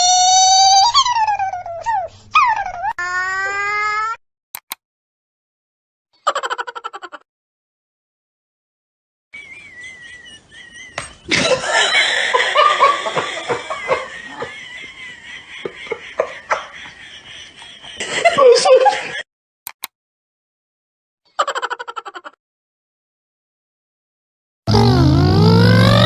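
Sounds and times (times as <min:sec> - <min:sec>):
short clicks: 0:04.6 - 0:04.8, 0:19.7 - 0:19.9
people laughing loudly: 0:09.4 - 0:19.2.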